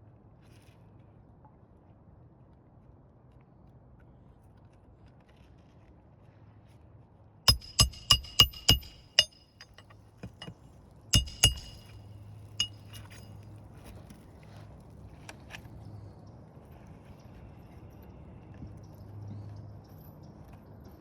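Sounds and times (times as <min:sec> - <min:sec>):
hammer striking nails: 0:07.5 - 0:10.5, 0:11.2 - 0:12.0, 0:12.6 - 0:13.2.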